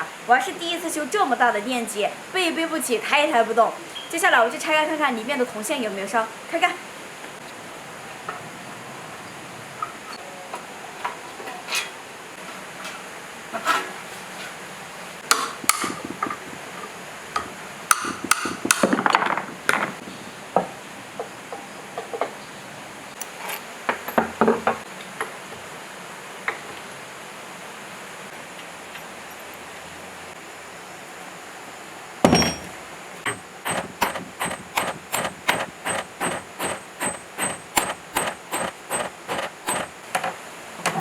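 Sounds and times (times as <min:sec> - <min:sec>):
hammer blows on metal: 0:15.3 - 0:16.6, 0:17.4 - 0:19.0, 0:33.3 - 0:39.9.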